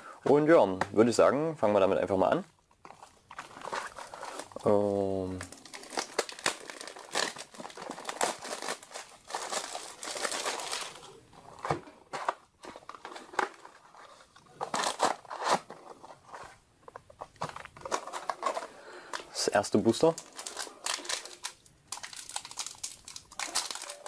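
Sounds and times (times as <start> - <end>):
foil pack crinkling and tearing: 3.3 - 11.2, 20.0 - 24.0.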